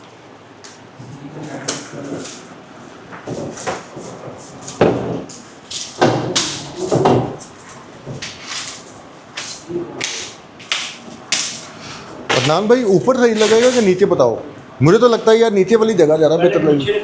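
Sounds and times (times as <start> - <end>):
rustling and clattering objects: 1.4 - 14.0.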